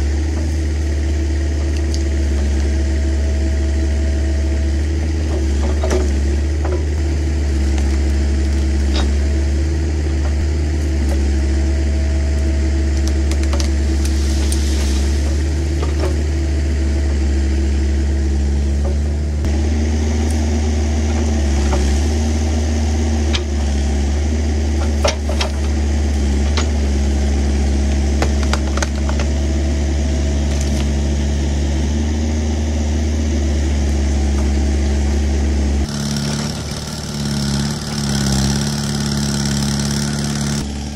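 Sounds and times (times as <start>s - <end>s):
excavator diesel engine droning: 0.0s - 40.9s.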